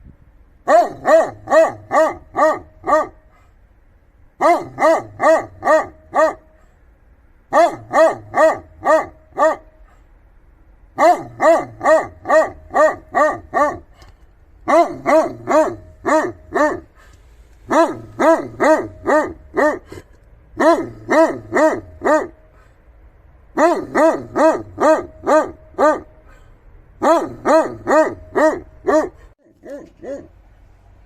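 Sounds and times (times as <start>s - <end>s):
dog barking: 0.6s - 3.4s, 4.4s - 6.6s, 7.5s - 9.8s, 11.0s - 13.9s, 14.6s - 17.0s, 17.7s - 22.4s, 23.5s - 26.2s, 27.0s - 30.3s.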